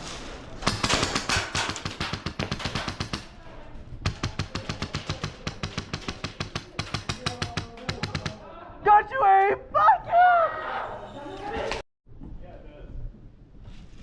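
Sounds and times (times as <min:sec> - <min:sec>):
airsoft guns firing bursts: 0:00.7 - 0:03.4, 0:04.1 - 0:08.4.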